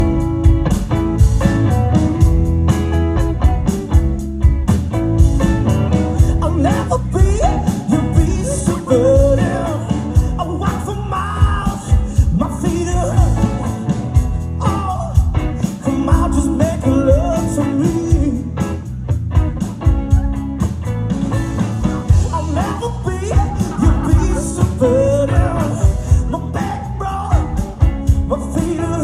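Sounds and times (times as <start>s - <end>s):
bass: 0.0s - 29.0s
guitar: 0.0s - 29.0s
steady drum beat: 0.0s - 29.0s
person singing: 6.2s - 13.8s, 14.6s - 18.6s, 22.2s - 29.0s.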